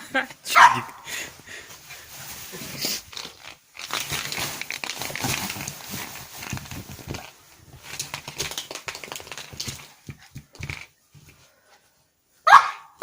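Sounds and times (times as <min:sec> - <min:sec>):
puppy scrabbling at crinkly toy: 0:02.1 - 0:11.4.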